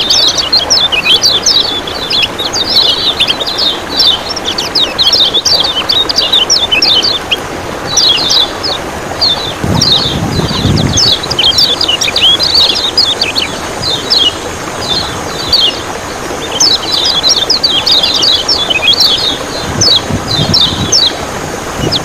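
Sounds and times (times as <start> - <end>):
bird chirping: 0.0 - 21.2
running water: 0.0 - 22.0.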